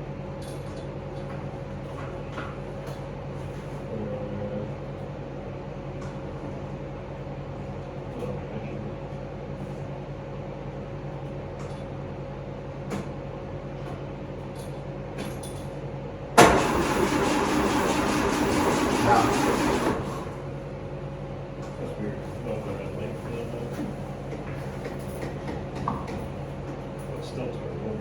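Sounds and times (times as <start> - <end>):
starter motor cranking engine: 16.4 - 20.5.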